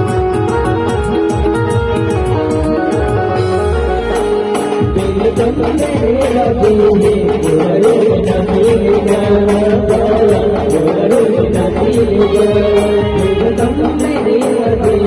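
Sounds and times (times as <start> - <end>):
wavering melody line: 0.0 - 7.4
steady percussion beat: 0.0 - 15.0.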